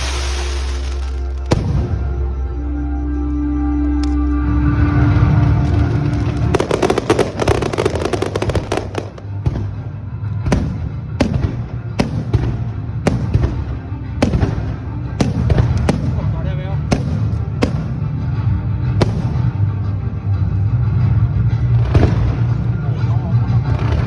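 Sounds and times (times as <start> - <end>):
fireworks bangs: 0.0 - 2.1, 6.0 - 9.8
fireworks crackling: 0.0 - 2.1, 5.5 - 9.8
music with held tones: 0.0 - 24.0.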